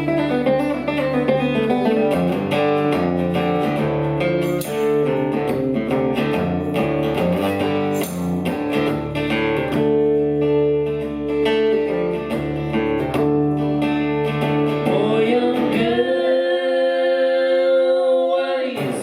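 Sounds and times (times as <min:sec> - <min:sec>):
live band music: 0:00.0 - 0:15.0
guitar strumming chords: 0:00.0 - 0:19.0.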